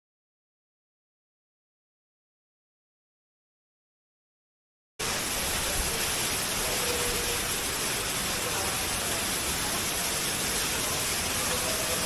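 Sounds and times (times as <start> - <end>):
waterfall rushing: 5.0 - 12.0.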